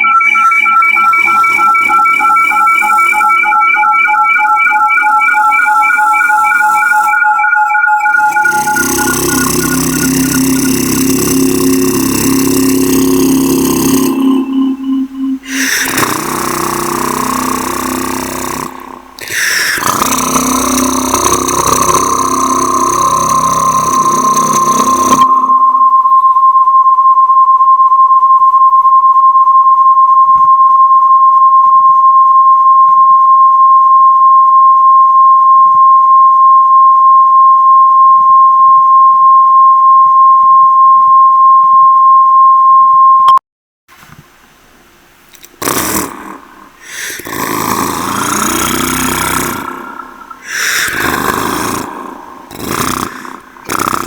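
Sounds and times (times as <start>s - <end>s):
microphone high tone: 0.0s - 43.4s, 45.6s - 54.0s
loud rough noise: 7.8s - 25.8s, 45.5s - 54.0s.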